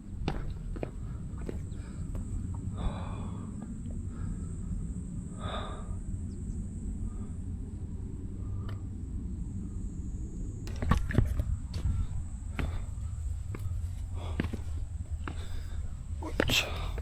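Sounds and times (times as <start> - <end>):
steady low rumble: 0.0 - 17.0
person breathing hard: 0.8 - 7.6, 11.7 - 17.0.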